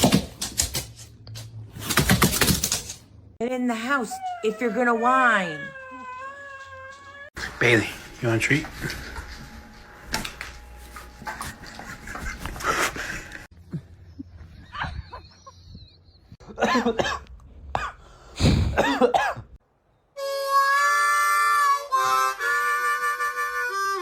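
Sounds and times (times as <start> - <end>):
dog yowling: 3.9 - 7.4.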